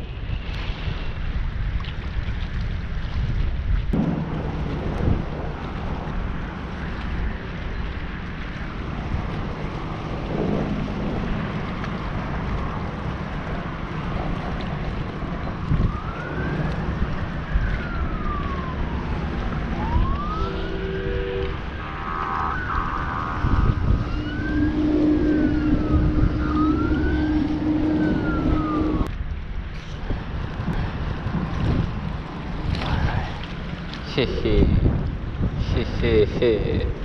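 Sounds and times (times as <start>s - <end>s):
wind buffeting microphone: 0.0s - 37.0s
distant siren wailing: 4.0s - 29.1s.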